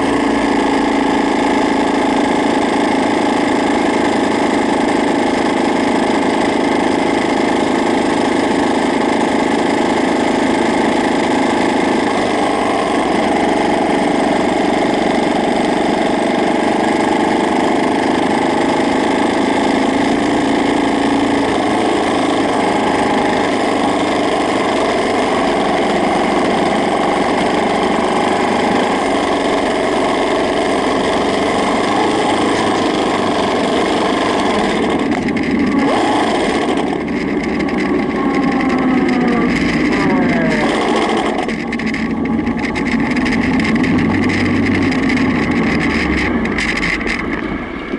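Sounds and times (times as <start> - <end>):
loud abnormal engine noise: 0.0 - 47.9
small motorcycle engine running: 0.0 - 47.9.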